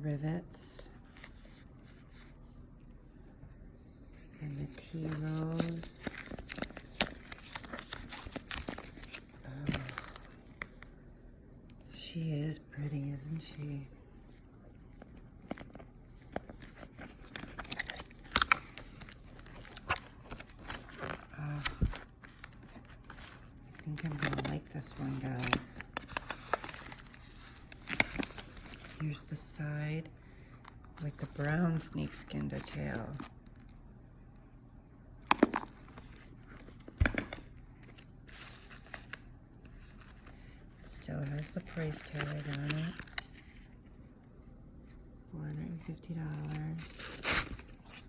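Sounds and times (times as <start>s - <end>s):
handbag and wrapping crinkling: 4.2s - 10.9s, 12.8s - 29.4s, 30.6s - 33.8s, 35.2s - 43.7s, 46.3s - 48.0s.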